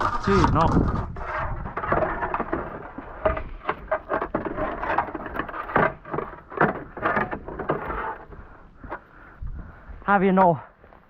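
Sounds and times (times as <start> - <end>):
shovel scraping snow: 0.0 - 1.6.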